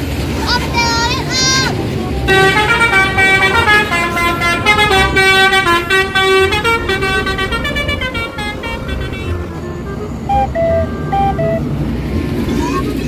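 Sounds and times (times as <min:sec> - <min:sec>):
bus engine rumble: 0:00.0 - 0:13.0
multi-tone musical horn: 0:02.0 - 0:11.8.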